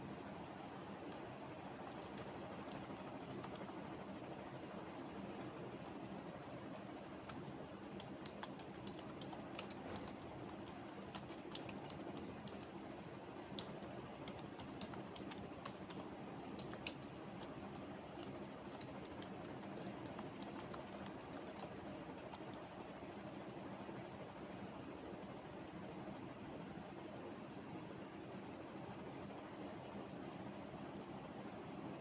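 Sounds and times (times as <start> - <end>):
faint room hum: 0.0 - 32.0
keyboard typing clicks: 1.8 - 3.7, 6.7 - 12.8, 13.5 - 22.7.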